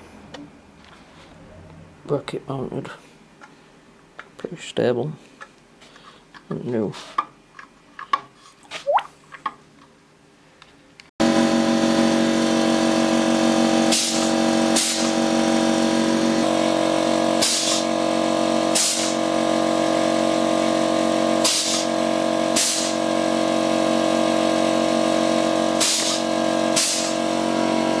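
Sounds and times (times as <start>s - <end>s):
pressing machine humming: 11.2s - 28.0s
short bursts of hiss: 17.4s - 17.8s, 18.8s - 19.2s, 21.4s - 21.9s, 22.6s - 23.0s, 25.8s - 26.2s, 26.8s - 27.2s.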